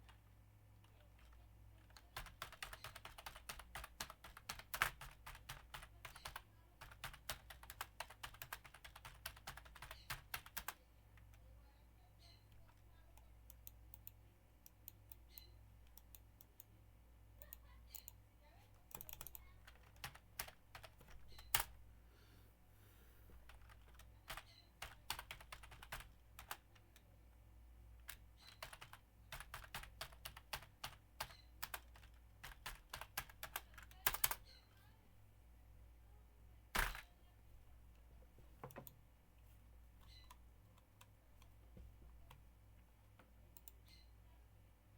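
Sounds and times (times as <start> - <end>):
low office hum: 0.0 - 44.9
typing on computer keyboard: 1.2 - 11.4, 18.8 - 21.7, 23.5 - 27.0, 28.0 - 34.5.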